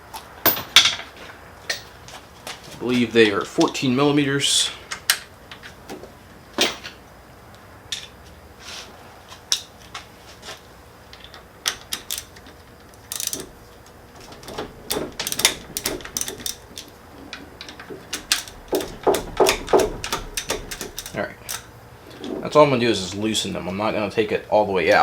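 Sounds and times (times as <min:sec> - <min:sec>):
socket wrench ratchet clicks: 0:11.3 - 0:13.6, 0:14.4 - 0:16.9, 0:17.6 - 0:21.7.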